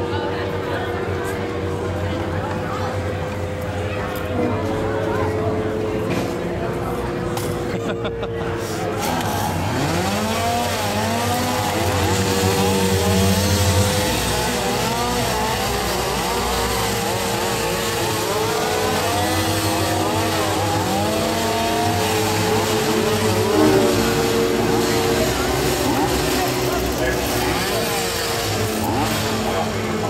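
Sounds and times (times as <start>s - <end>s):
chainsaws idling and revving: 8.9s - 30.0s.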